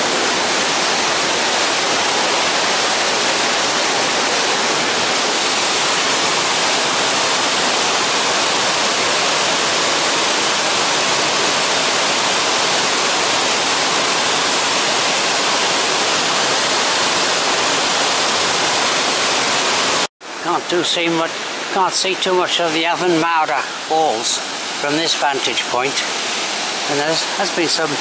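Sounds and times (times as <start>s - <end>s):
waterfall roaring: 0.0s - 28.0s.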